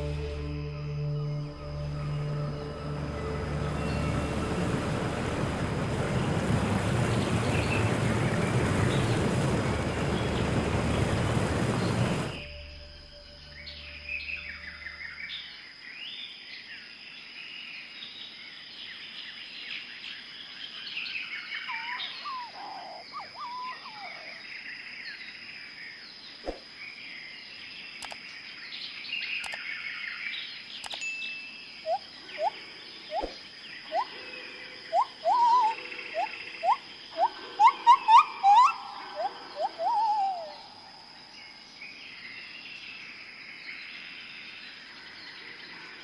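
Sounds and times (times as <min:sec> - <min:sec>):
steady high-pitched tone: 0:00.0 - 0:05.8
birds chirping and trilling: 0:02.9 - 0:12.6, 0:17.5 - 0:46.0
short rising whistled calls: 0:21.7 - 0:24.4, 0:31.8 - 0:34.2, 0:34.9 - 0:40.8.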